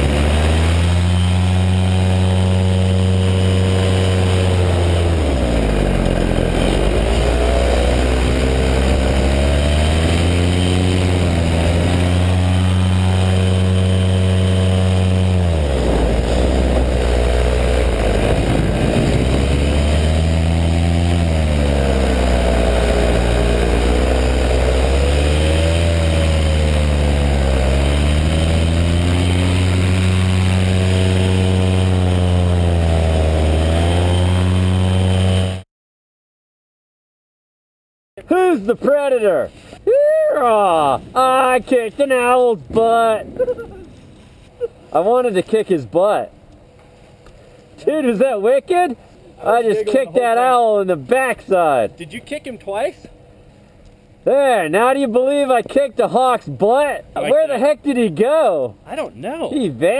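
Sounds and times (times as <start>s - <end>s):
paramotor engine and propeller: 0.0s - 35.6s.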